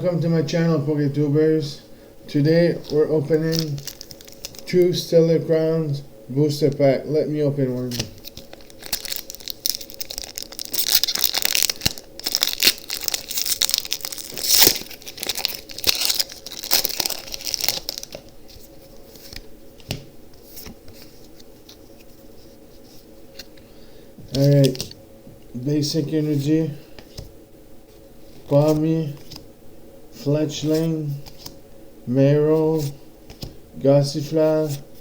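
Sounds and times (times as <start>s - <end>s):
foil wrapper tearing and crinkling: 2.8s - 4.8s, 8.0s - 18.3s.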